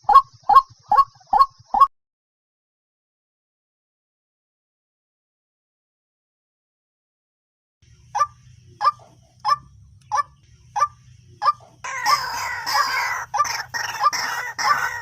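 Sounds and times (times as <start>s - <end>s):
waterhen calling: 8.1s - 15.0s.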